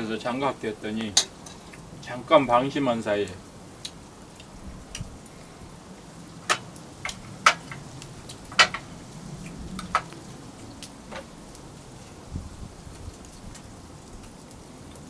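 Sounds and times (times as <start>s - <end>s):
wood fire crackling: 0.0s - 15.0s
sharp pops of fire: 6.2s - 11.7s.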